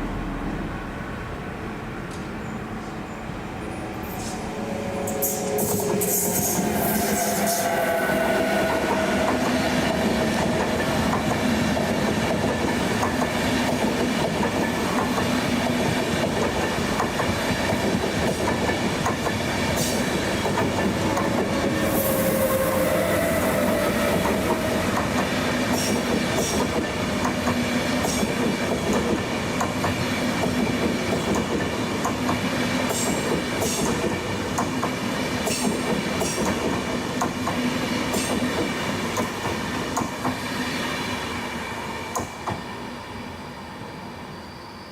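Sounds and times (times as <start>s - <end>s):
train wheels clattering on rails: 8.5s - 41.2s, 42.0s - 42.8s.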